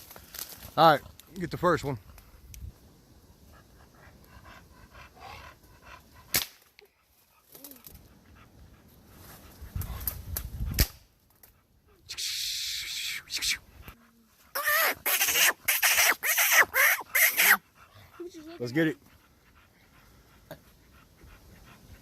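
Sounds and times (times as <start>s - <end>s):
dog panting: 3.3s - 10.8s, 13.5s - 22.0s
sharp cracks: 6.3s - 6.7s
dog whining: 14.5s - 17.6s.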